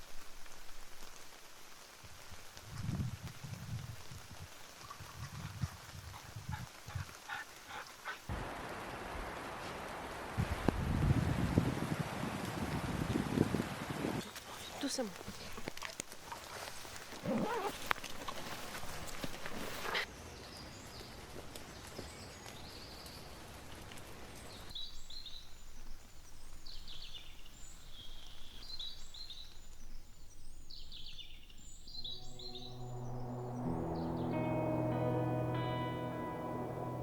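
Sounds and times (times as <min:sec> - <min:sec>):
soft music: 0:31.9 - 0:37.0.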